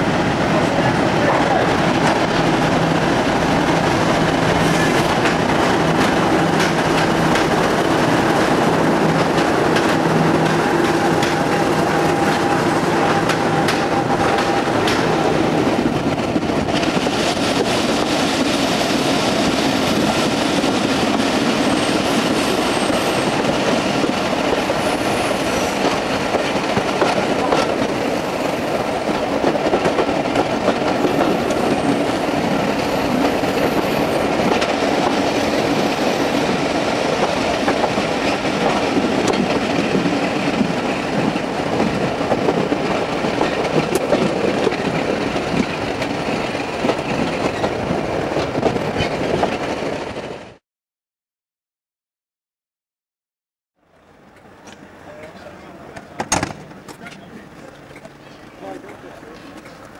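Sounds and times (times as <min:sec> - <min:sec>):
train running on track: 0:00.0 - 0:50.6, 0:53.8 - 0:59.9.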